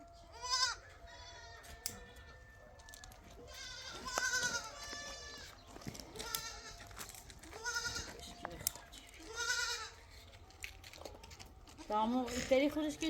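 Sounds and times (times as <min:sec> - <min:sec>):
goat bleating: 0:00.3 - 0:01.7, 0:03.4 - 0:05.6, 0:06.2 - 0:08.2, 0:09.2 - 0:10.1.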